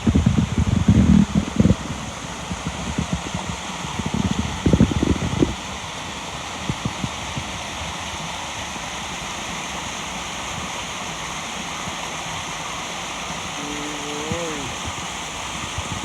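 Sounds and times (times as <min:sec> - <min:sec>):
waterfall rushing: 0:10.3 - 0:16.0.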